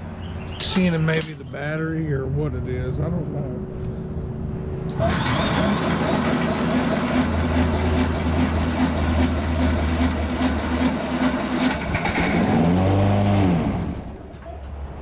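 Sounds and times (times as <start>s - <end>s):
lawn mower engine running: 4.9s - 14.3s.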